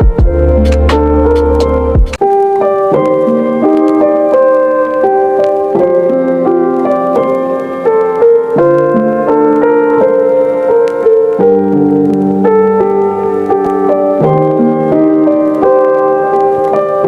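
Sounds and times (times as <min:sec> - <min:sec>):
gentle piano music: 0:00.0 - 0:17.0.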